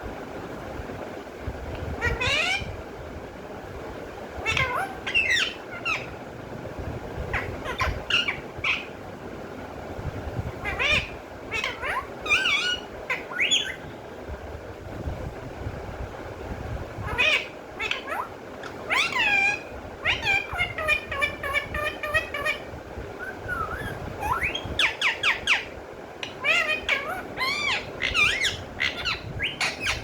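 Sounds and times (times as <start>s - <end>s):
parrot squawking and chattering: 2.0s - 2.7s, 4.4s - 6.2s, 7.3s - 9.0s, 10.6s - 13.9s, 17.0s - 30.0s.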